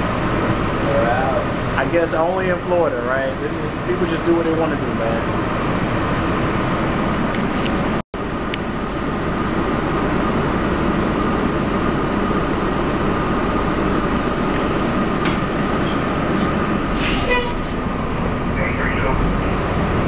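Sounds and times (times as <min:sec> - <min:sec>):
vehicle interior rumble: 0:05.4 - 0:20.0.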